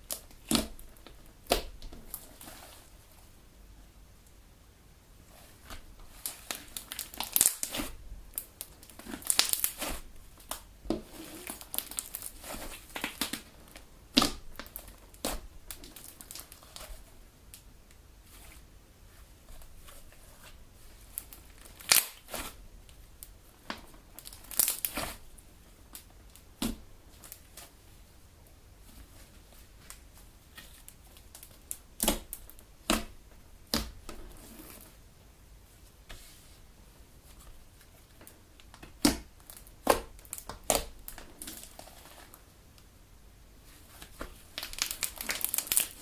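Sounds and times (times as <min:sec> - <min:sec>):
slime being kneaded and squeezed: 0:05.4 - 0:17.0, 0:19.8 - 0:22.6, 0:24.0 - 0:25.3, 0:44.0 - 0:46.0.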